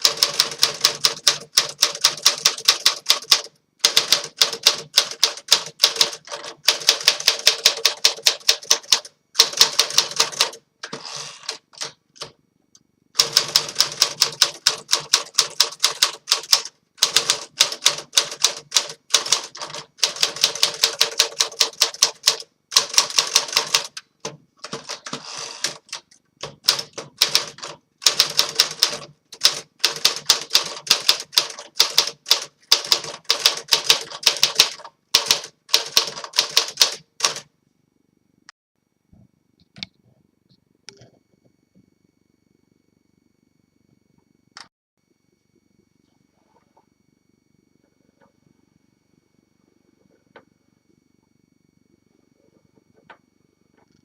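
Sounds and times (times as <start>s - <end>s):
manual typewriter keystrikes: 0.0s - 12.4s, 13.2s - 37.5s.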